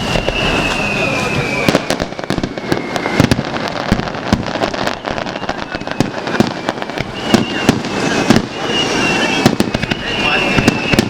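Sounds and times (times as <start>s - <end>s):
fireworks booming and cracking: 0.0s - 11.0s
fireworks crackle: 0.0s - 11.0s.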